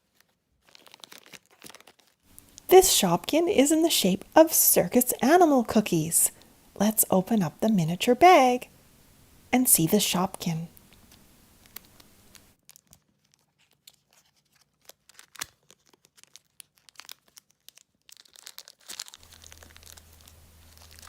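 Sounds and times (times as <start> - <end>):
plastic bag tearing and crinkling: 0.0 - 2.7, 10.8 - 21.0.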